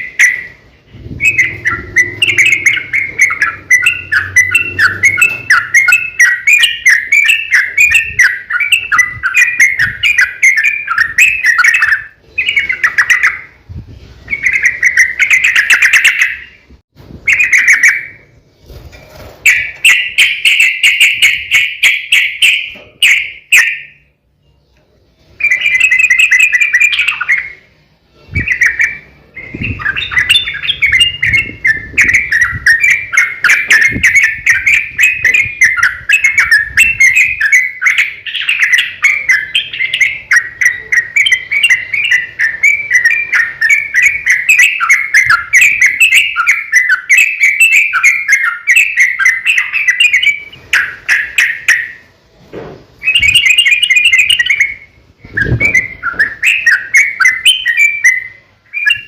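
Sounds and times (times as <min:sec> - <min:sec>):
bird singing chattering phrases: 0:00.0 - 0:13.6, 0:28.3 - 0:52.1.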